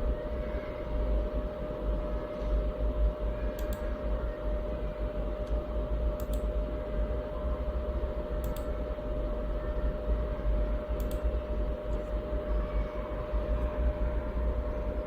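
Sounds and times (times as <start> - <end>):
computer cooling fans whirring: 0.0 - 15.0.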